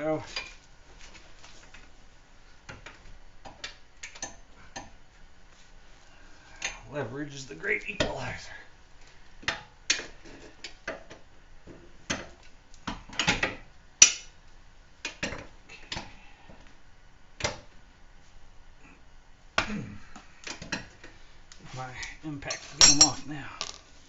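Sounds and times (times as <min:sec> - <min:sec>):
metallic clinks of hand tools: 0:22.8 - 0:23.2.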